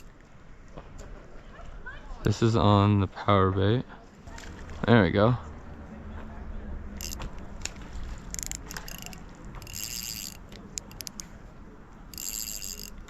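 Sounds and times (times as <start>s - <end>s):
fishing reel ticking and buzzing: 7.0s - 7.2s, 8.3s - 11.3s, 12.1s - 13.0s
fishing reel clicks: 7.0s - 7.3s, 8.2s - 11.3s, 12.1s - 13.0s.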